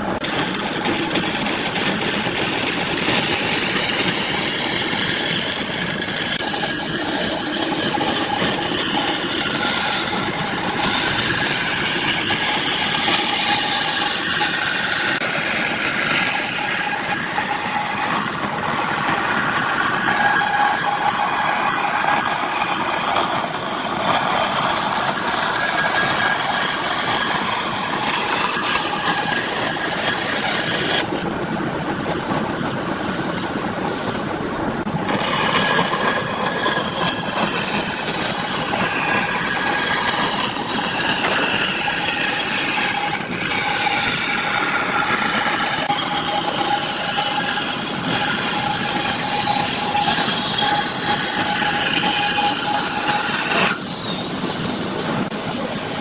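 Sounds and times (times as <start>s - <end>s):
power tool motor running: 35.0s - 53.8s.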